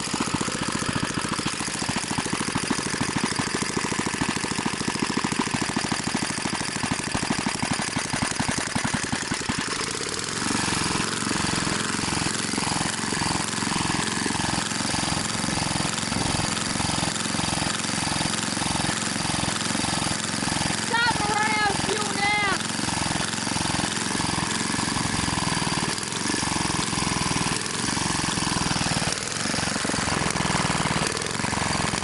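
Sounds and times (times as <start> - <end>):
single-cylinder engine running: 0.0 - 32.0.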